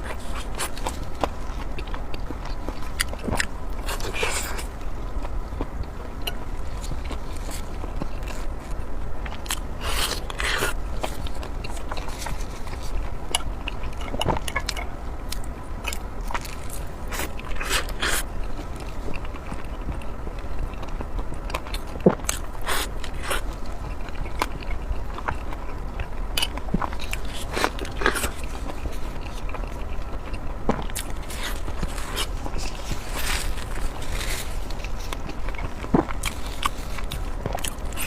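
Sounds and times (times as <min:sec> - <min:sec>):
person chewing food: 0:00.0 - 0:38.0
steady low hum: 0:00.0 - 0:38.0.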